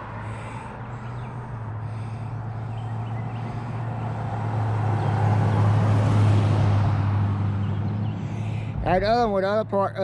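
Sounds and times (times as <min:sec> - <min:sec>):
road noise: 0:00.0 - 0:10.0
vehicle engine humming: 0:00.0 - 0:10.0
wind noise: 0:08.3 - 0:09.4.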